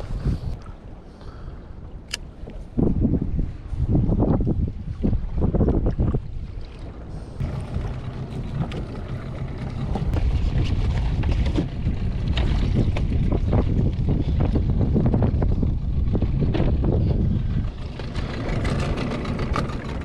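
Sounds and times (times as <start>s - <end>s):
wind buffeting microphone: 0.0s - 20.0s
outboard motor running: 6.8s - 20.0s
water knocking against hull: 7.4s - 14.2s.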